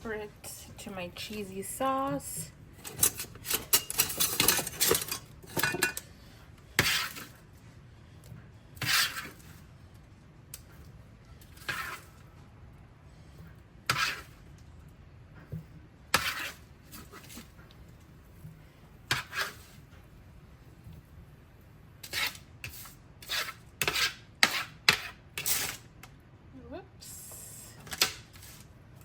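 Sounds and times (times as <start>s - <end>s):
utensil clinking and scraping cookware: 1.2s - 6.1s.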